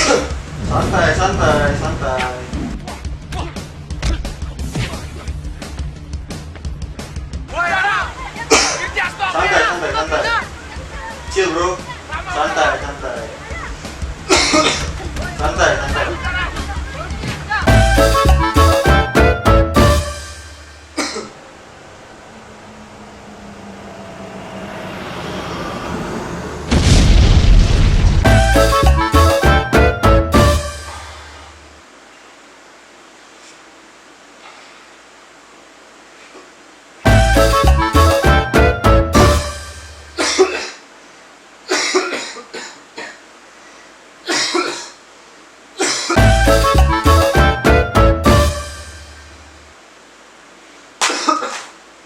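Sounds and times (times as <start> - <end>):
music: 2.6 - 8.6, 15.4 - 20.8, 28.2 - 31.4, 37.1 - 40.2, 46.2 - 49.5
quiet noise: 7.5 - 26.7, 28.7 - 52.0
loud cough: 8.5 - 8.9, 14.3 - 15.0, 21.0 - 21.4, 40.2 - 40.8, 41.7 - 43.2, 44.3 - 45.0, 45.8 - 46.2, 51.0 - 51.7.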